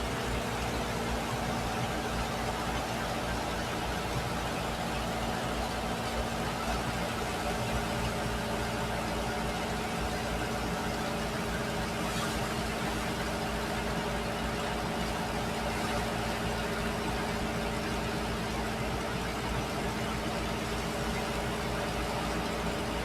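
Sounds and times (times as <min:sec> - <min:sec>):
engine humming steadily: 0:00.0 - 0:23.0.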